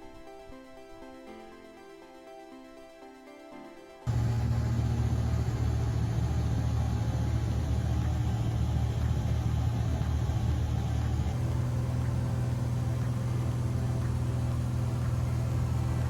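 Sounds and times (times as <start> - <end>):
light aircraft engine drone: 4.1 - 16.0.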